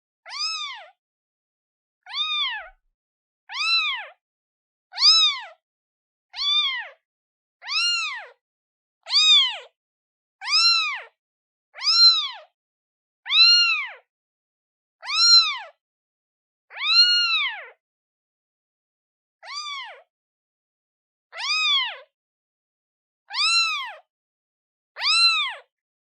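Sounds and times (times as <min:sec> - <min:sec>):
kitten meowing: 0:00.3 - 0:01.0, 0:02.0 - 0:02.8, 0:03.5 - 0:04.2, 0:04.9 - 0:05.6, 0:06.3 - 0:07.0, 0:07.6 - 0:08.4, 0:09.1 - 0:09.7, 0:10.4 - 0:11.2, 0:11.8 - 0:12.5, 0:13.3 - 0:14.1, 0:15.0 - 0:15.8, 0:16.7 - 0:17.8, 0:19.4 - 0:20.1, 0:21.3 - 0:22.1, 0:23.3 - 0:24.1, 0:25.0 - 0:25.7.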